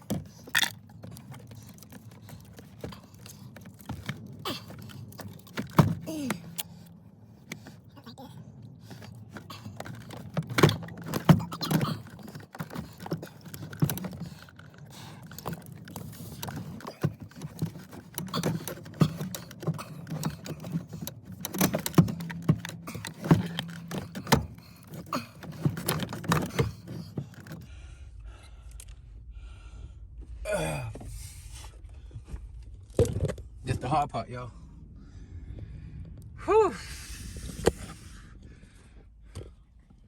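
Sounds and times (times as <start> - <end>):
steering wheel parts clicking and knocking: 0.0 - 27.7.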